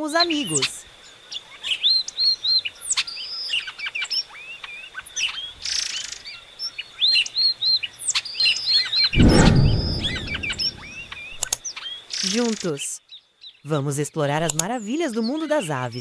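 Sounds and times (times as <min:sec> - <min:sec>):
loud low rumble: 0:09.2 - 0:11.4.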